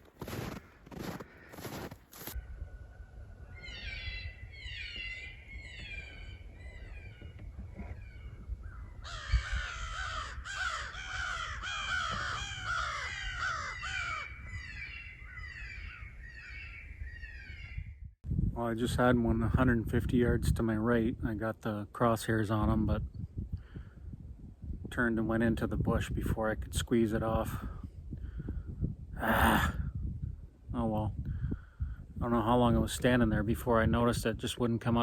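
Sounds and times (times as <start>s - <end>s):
coyotes yipping and howling: 2.4s - 17.8s.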